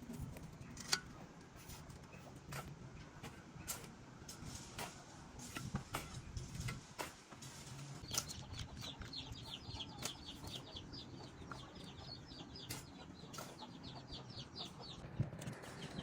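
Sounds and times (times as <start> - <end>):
bird chirping: 8.0 - 16.0.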